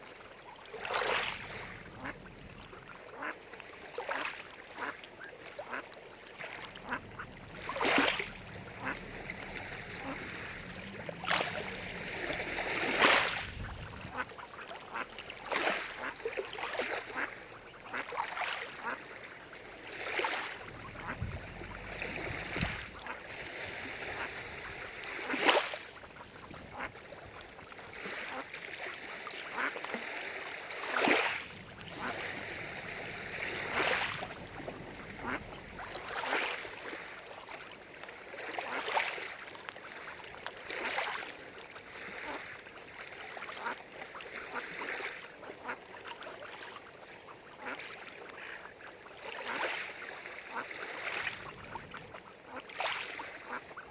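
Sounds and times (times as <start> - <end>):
ducks quacking: 1.4 - 3.4, 4.0 - 30.0, 30.8 - 37.0, 43.4 - 43.8, 47.6 - 47.8, 50.5 - 53.9.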